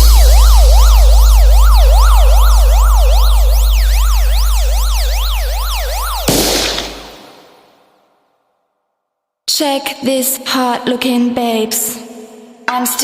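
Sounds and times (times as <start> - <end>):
deep sub-bass drone: 0.0 - 6.6
siren-like sweeping tone: 0.0 - 7.7.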